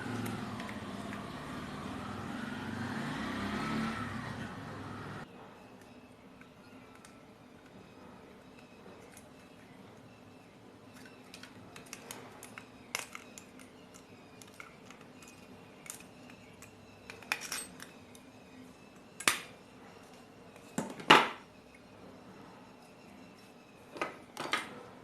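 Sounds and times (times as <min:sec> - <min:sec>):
small metal tools clinking: 0:11.0 - 0:18.0.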